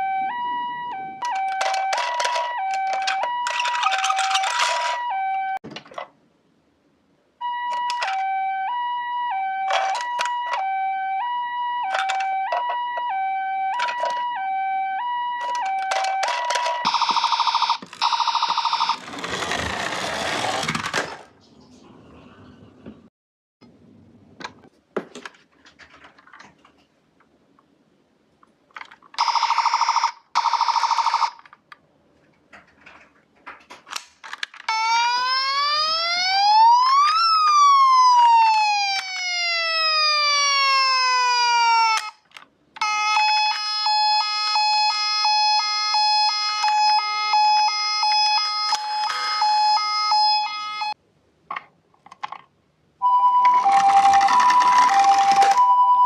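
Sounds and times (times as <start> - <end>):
rising and falling siren wail: 0.0 - 5.6, 7.4 - 20.6, 34.7 - 42.2, 42.8 - 51.0
short buzzy toy siren: 0.0 - 5.6, 34.7 - 42.2, 42.8 - 51.0, 53.0 - 55.8.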